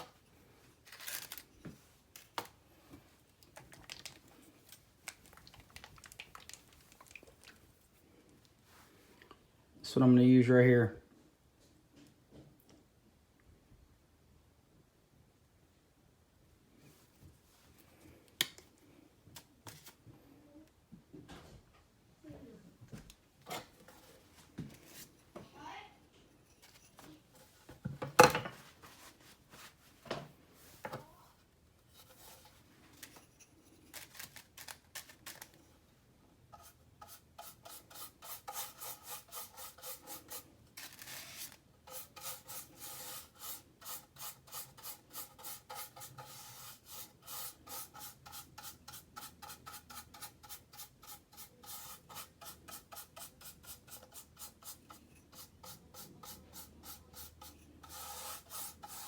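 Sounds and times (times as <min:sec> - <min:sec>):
sanding plastic by hand: 0:36.6 - 0:59.0.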